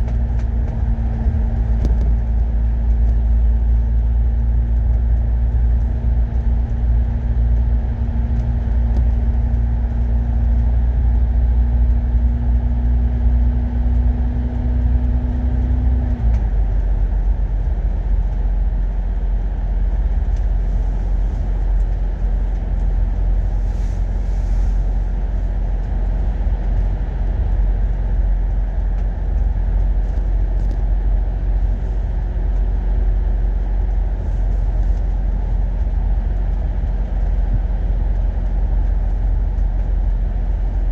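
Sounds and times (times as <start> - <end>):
bus engine and road rumble: 0.0 - 40.9
steady whine: 19.4 - 39.6.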